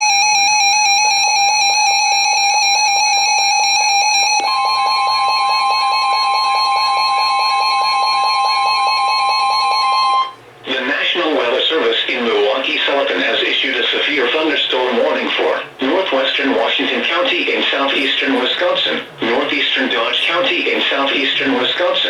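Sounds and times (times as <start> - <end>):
higher steady tone: 0.0 - 10.4
pulsing emergency alert tone: 0.0 - 10.4.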